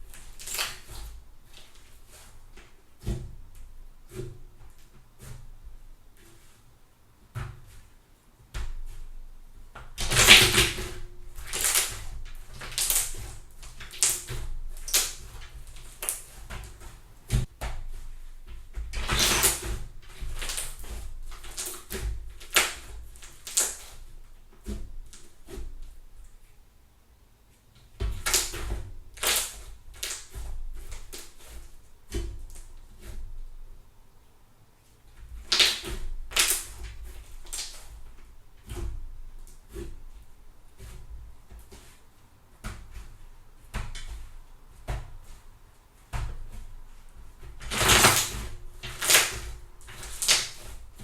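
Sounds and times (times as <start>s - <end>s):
slime crackling and popping: 10.0s - 13.2s, 13.8s - 16.3s, 35.5s - 36.8s, 47.7s - 50.7s.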